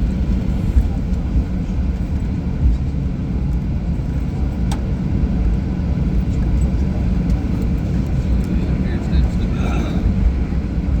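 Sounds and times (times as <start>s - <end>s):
airliner cabin engine rumble: 0.0s - 11.0s.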